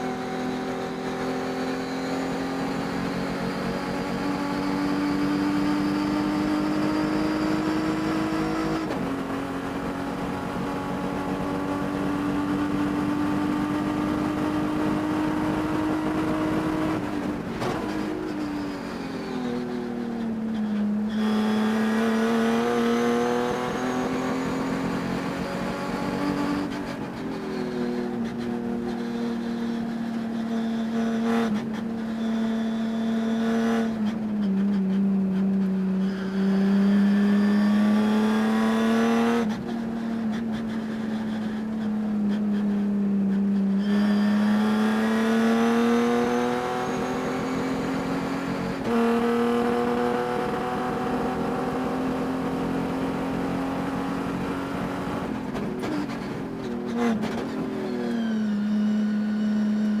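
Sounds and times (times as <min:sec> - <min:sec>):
race car engine revving: 0:21.1 - 0:27.1, 0:36.0 - 0:41.7, 0:43.8 - 0:57.5.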